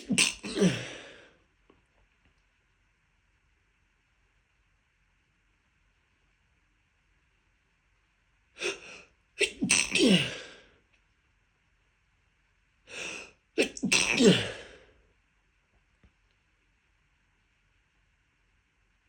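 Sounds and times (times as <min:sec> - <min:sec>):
person sneezing: 0:00.0 - 0:01.3, 0:08.6 - 0:10.6, 0:12.9 - 0:14.8
sharp in-breath: 0:12.9 - 0:13.3.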